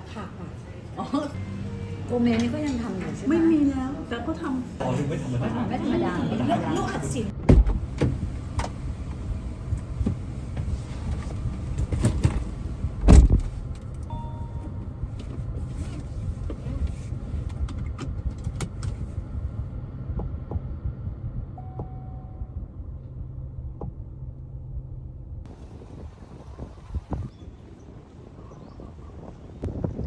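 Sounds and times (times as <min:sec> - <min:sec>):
car engine and road rumble: 0:00.0 - 0:04.8, 0:06.8 - 0:30.0
loud thump: 0:07.4 - 0:08.2.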